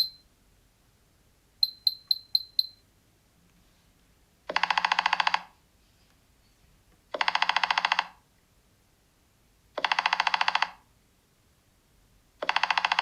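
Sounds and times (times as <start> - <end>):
phone ringtone stuttering tone: 0.0 - 0.2, 4.5 - 5.5, 7.2 - 8.1, 9.8 - 10.8, 12.4 - 13.0.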